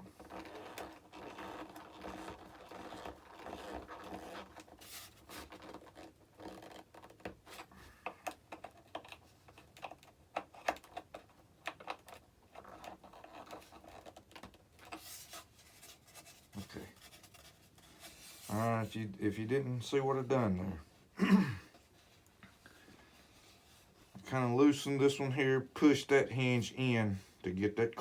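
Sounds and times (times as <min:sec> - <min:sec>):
rustling scrape: 0:00.0 - 0:06.8, 0:14.8 - 0:19.0, 0:21.8 - 0:25.2.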